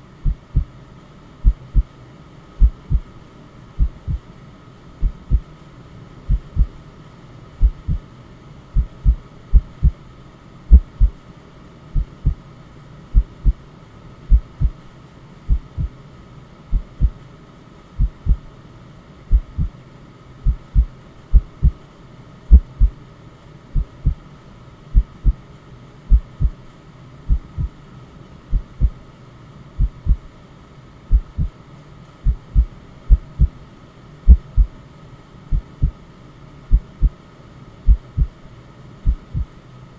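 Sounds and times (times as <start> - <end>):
white-noise hiss: 0.0 - 39.9
heartbeat thumps: 0.2 - 0.7, 1.4 - 1.9, 2.6 - 3.1, 3.8 - 4.2, 5.0 - 5.5, 6.3 - 6.7, 7.6 - 8.0, 8.8 - 10.0, 10.7 - 11.2, 12.0 - 12.4, 13.2 - 13.6, 14.3 - 14.8, 15.5 - 15.9, 16.7 - 17.2, 18.0 - 18.5, 19.3 - 19.7, 20.4 - 21.8, 22.5 - 23.0, 23.8 - 24.2, 25.0 - 25.4, 26.1 - 26.6, 27.3 - 27.8, 28.5 - 29.0, 29.8 - 30.3, 31.1 - 31.5, 32.2 - 33.6, 34.3 - 34.7, 35.5 - 36.0, 36.7 - 37.2, 37.9 - 38.4, 39.1 - 39.6.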